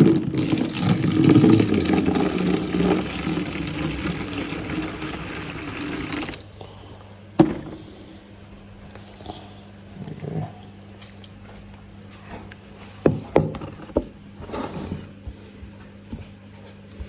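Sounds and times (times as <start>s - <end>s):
water pouring into pan: 0.0s - 6.4s.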